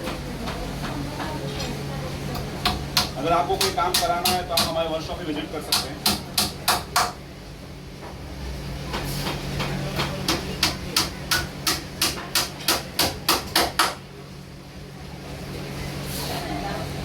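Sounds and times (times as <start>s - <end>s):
hammer nailing wood: 5.7s - 7.2s, 10.3s - 14.0s.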